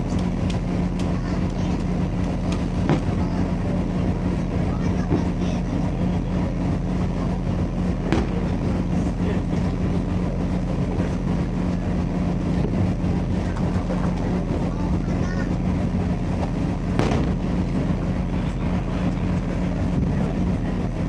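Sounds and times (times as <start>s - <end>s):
low engine-like drone: 0.0s - 21.0s
sharp crack: 2.2s - 3.2s, 8.0s - 8.7s, 17.0s - 17.8s.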